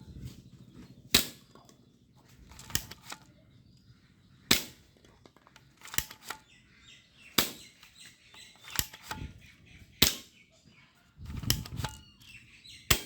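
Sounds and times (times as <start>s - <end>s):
toy air gun snapping: 1.2s - 1.5s, 2.3s - 3.4s, 4.5s - 6.6s, 7.2s - 10.4s, 11.2s - 12.3s.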